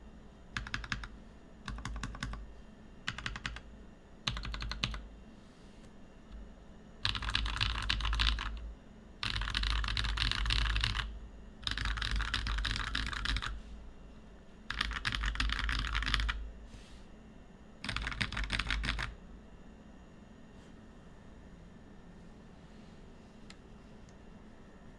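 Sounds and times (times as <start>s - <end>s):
mechanical keyboard typing: 0.5s - 2.4s, 3.0s - 5.0s, 7.0s - 13.6s, 14.7s - 16.4s, 17.8s - 19.2s.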